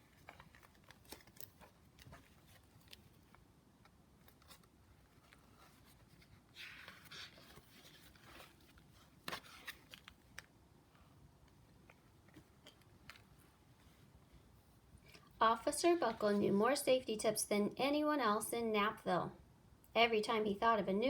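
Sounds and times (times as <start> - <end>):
soft rustle: 0.0 - 16.7.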